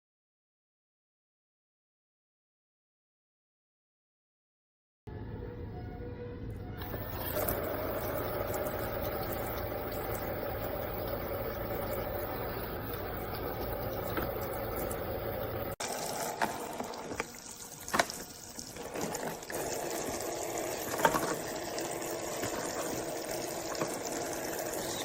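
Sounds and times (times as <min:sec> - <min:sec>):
water trickling: 0:06.7 - 0:25.0
water running into plastic basin: 0:06.8 - 0:25.0.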